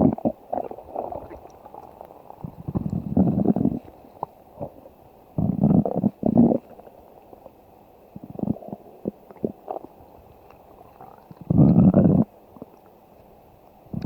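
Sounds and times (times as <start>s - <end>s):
stomach growling and gurgling: 0.0s - 13.0s.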